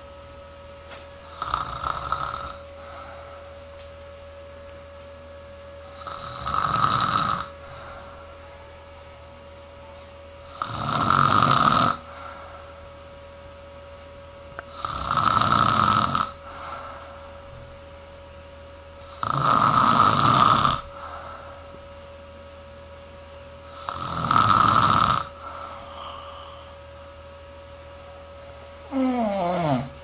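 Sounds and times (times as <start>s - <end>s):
faint steady hum: 0.0s - 30.0s
person snoring: 1.2s - 3.4s, 5.9s - 8.4s, 10.4s - 12.8s, 14.7s - 17.4s, 19.0s - 21.6s, 23.7s - 26.8s, 28.3s - 30.0s.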